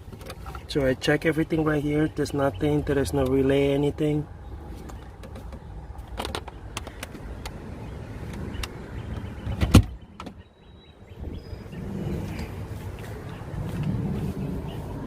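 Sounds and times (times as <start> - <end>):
low rumble: 11.0 - 15.0.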